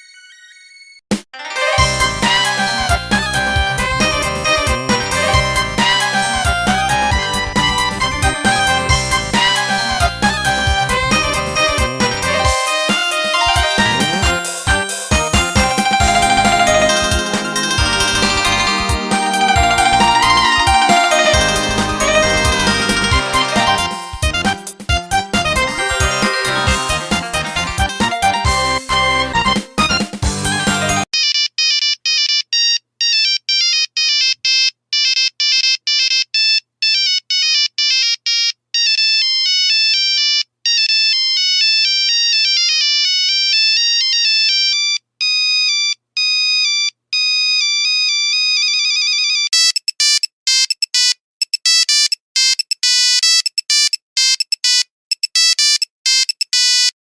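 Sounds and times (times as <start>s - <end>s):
electronic beep ringtone melody: 13.4s - 15.1s.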